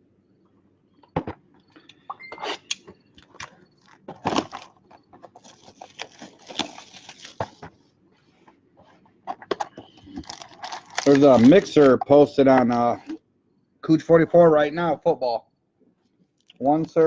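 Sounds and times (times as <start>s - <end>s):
pack wrappers crinkling: 3.2s - 7.7s, 9.9s - 12.0s.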